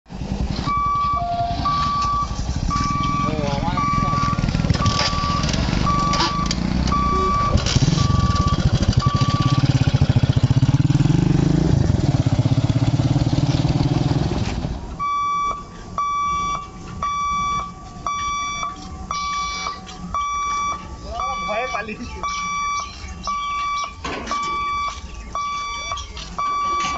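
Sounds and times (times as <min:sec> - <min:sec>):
level crossing warning beeps: 0:00.7 - 0:09.8, 0:15.0 - 0:26.9.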